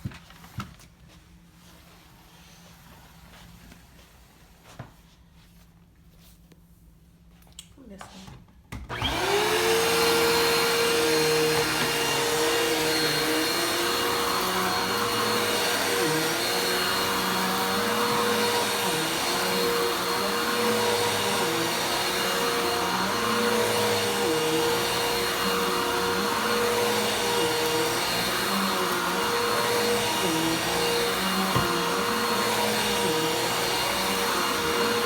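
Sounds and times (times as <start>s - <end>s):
vacuum cleaner motor whining: 8.8s - 35.0s.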